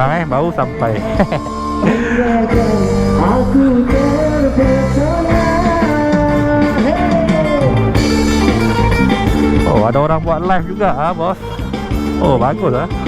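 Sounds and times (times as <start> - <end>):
guitar and band backing: 0.0 - 13.0
person singing long notes: 1.4 - 8.9.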